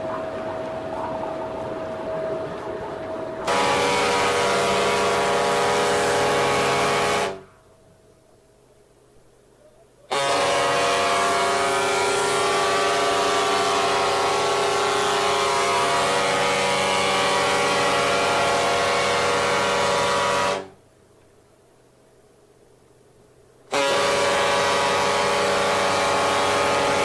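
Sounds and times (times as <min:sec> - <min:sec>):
ship's horn blast: 0:00.0 - 0:07.6, 0:10.1 - 0:20.8, 0:23.7 - 0:27.0.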